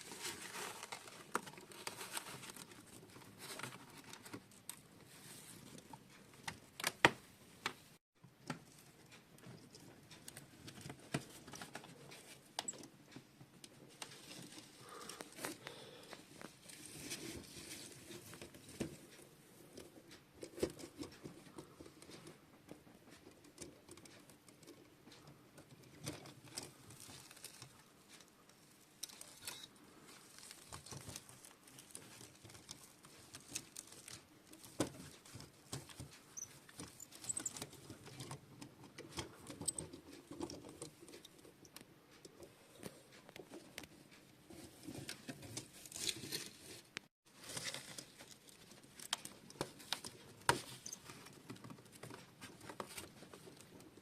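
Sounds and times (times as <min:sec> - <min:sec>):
toy models clicking and scraping: 0:23.1 - 0:54.0.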